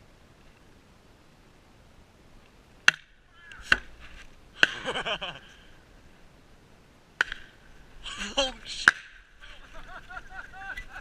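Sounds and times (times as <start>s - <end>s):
sharp cracks: 7.2s - 7.6s, 8.7s - 9.4s.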